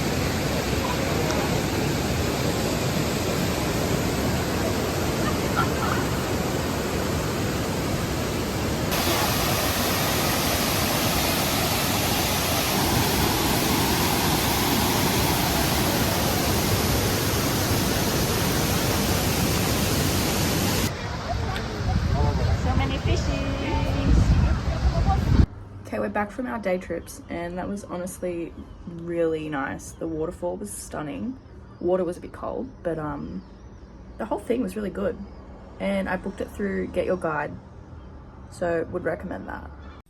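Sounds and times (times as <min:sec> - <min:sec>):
waterfall rushing: 0:00.0 - 0:25.1.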